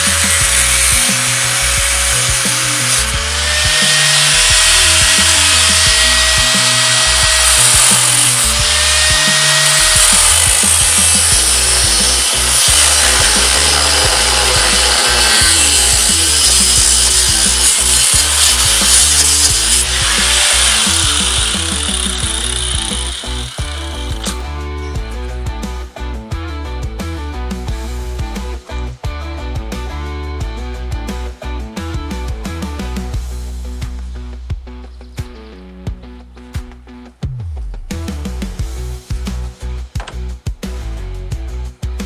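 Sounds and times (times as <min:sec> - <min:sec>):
power tool cutting steel: 0:00.0 - 0:24.6
music with stepping bass line: 0:00.0 - 0:42.0.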